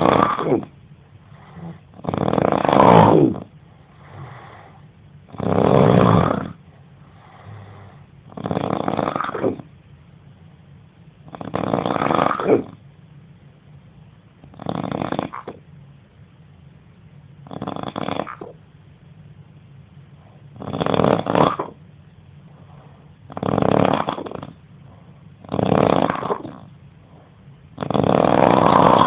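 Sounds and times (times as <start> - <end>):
man snoring loudly: 0.0 - 0.7, 1.4 - 4.7, 5.3 - 6.6, 7.2 - 9.6, 11.3 - 12.8, 14.6 - 15.6, 17.5 - 18.5, 20.6 - 21.8, 23.3 - 24.5, 25.4 - 26.7, 27.8 - 29.0
soft breathing: 0.0 - 2.0, 2.8 - 8.5, 20.0 - 20.6, 22.3 - 23.4, 24.0 - 29.0.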